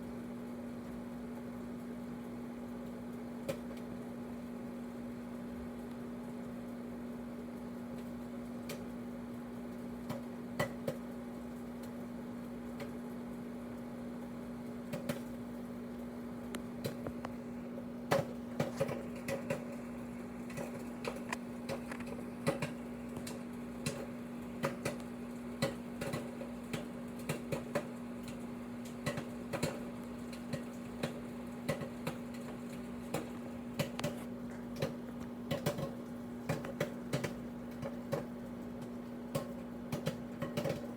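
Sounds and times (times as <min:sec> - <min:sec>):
microwave oven humming: 0:00.0 - 0:40.9
popcorn popping: 0:02.8 - 0:04.1, 0:07.5 - 0:13.9, 0:14.5 - 0:40.9.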